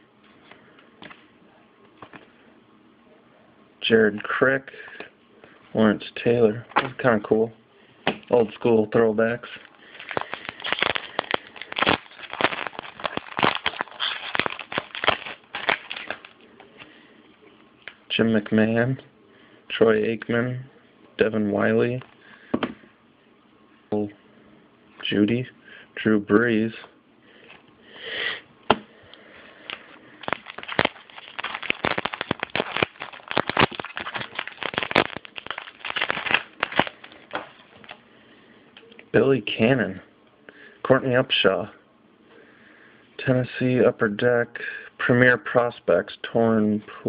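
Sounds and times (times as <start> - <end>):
foil wrapper crackling and rustling: 9.4 - 16.4, 29.6 - 38.0
trading cards flipped by hand: 30.2 - 38.0.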